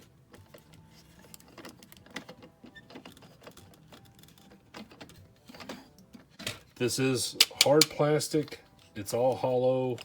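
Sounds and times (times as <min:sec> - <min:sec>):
plastic toy clicking and tapping: 0:07.3 - 0:08.6.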